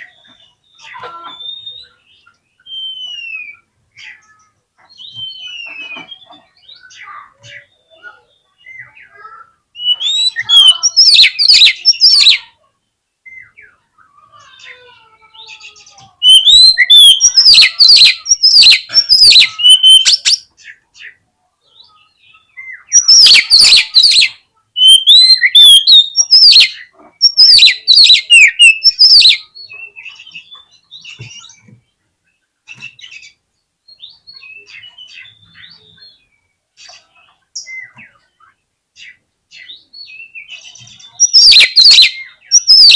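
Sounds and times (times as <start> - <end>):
faint bird chirps: 0.0 - 42.9
songbird singing sharp sweeping notes: 16.2 - 20.4, 22.5 - 31.6, 39.0 - 42.9.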